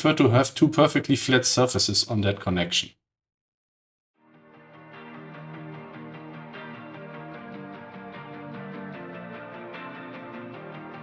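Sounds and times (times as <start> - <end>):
background music: 4.2 - 11.0.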